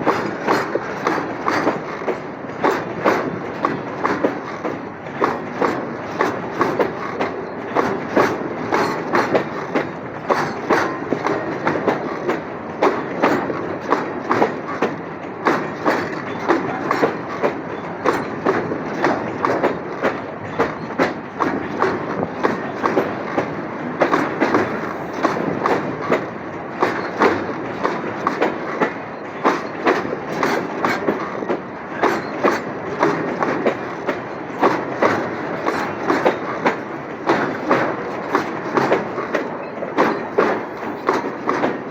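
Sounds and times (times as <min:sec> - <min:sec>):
train wheels clacking over rail joints: 0:00.0 - 0:41.9.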